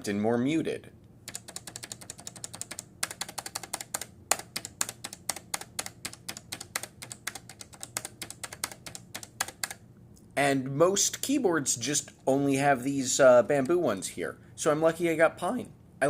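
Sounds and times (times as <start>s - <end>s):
keyboard keys clacking: 1.3s - 9.8s.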